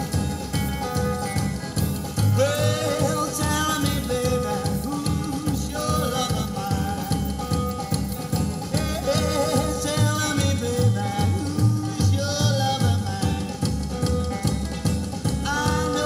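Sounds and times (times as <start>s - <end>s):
rockabilly band playing: 0.0s - 16.0s
person singing: 2.1s - 7.8s, 8.6s - 13.7s, 15.3s - 16.0s.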